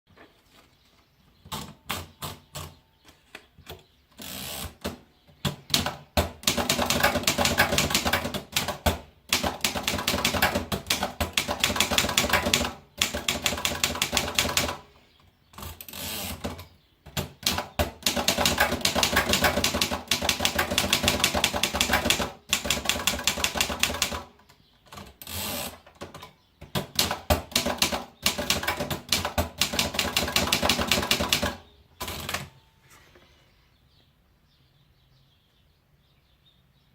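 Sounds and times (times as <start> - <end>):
typewriter keystrikes: 5.7 - 14.8, 17.3 - 24.3, 26.0 - 32.5.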